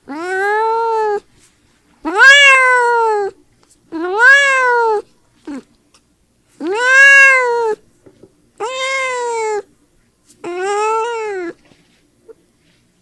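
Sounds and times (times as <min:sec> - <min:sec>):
cat meowing: 0:00.1 - 0:01.3, 0:02.0 - 0:05.6, 0:06.6 - 0:07.8, 0:08.6 - 0:09.7, 0:10.4 - 0:11.6.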